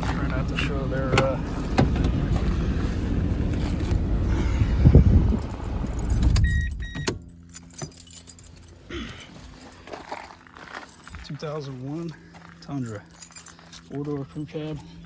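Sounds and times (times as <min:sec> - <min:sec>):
keys jangling: 0:05.3 - 0:11.6, 0:12.6 - 0:15.0.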